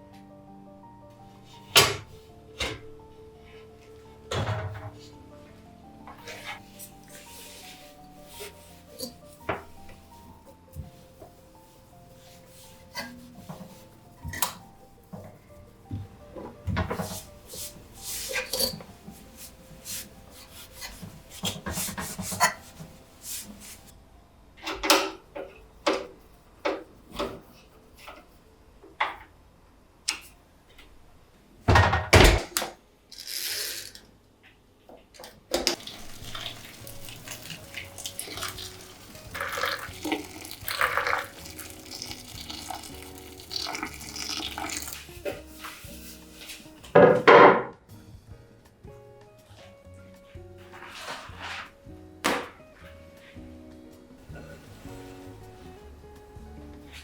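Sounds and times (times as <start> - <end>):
dishes and utensils clinking: 8.4 - 9.8, 16.4 - 18.9, 35.6 - 45.4
tap running: 35.6 - 45.0.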